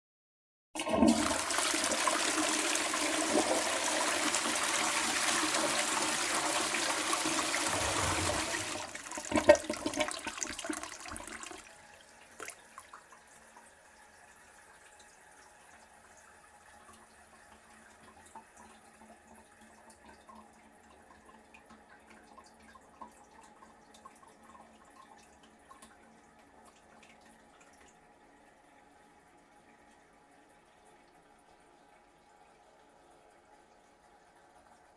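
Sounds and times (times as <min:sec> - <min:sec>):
water gurgling down drain: 0:00.8 - 0:11.6
cistern refilling: 0:00.8 - 0:13.1
toilet flushing: 0:00.8 - 0:13.5.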